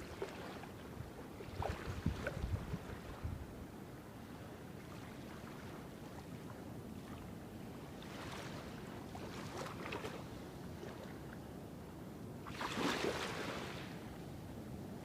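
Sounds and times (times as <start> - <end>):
sea water lapping: 0.0 - 3.2, 7.9 - 11.4, 12.4 - 14.0.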